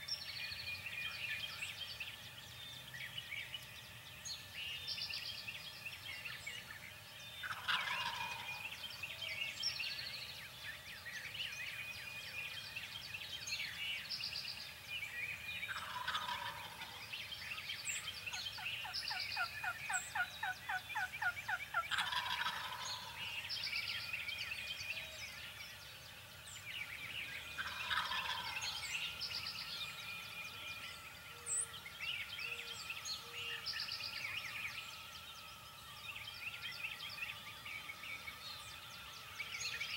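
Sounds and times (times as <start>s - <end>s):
songbirds chirping: 0.0s - 39.9s
wild turkey gobbling: 7.4s - 8.6s, 15.7s - 17.0s, 18.8s - 23.3s, 27.6s - 28.7s.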